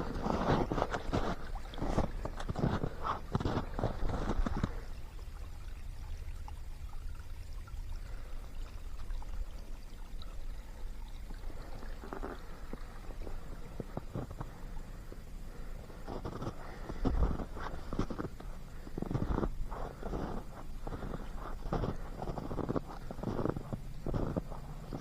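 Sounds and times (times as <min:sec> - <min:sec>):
crunching footsteps: 0:00.0 - 0:04.8, 0:13.2 - 0:15.2, 0:15.8 - 0:25.0
stream water trickling: 0:00.0 - 0:25.0.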